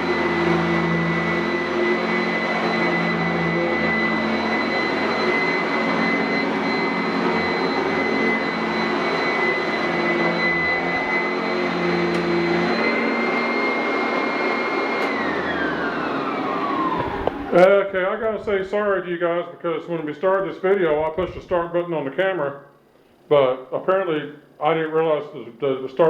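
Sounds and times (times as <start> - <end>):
motor winding down: 0.0 - 17.7
vacuum cleaner whining: 0.0 - 19.0.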